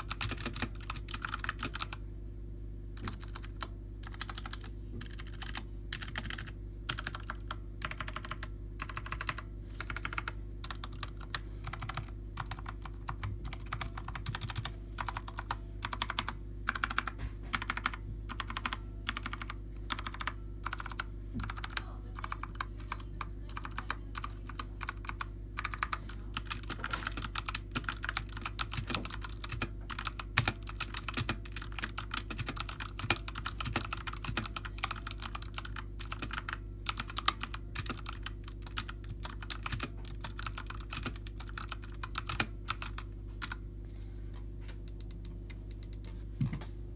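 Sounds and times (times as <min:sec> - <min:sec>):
mechanical keyboard typing: 0:00.0 - 0:02.0, 0:03.0 - 0:43.6
steady low hum: 0:00.0 - 0:46.9.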